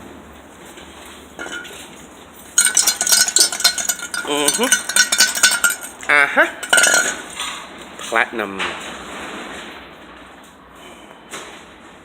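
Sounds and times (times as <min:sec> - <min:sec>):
metal pieces rattling inside exhaust: 0:01.4 - 0:08.2.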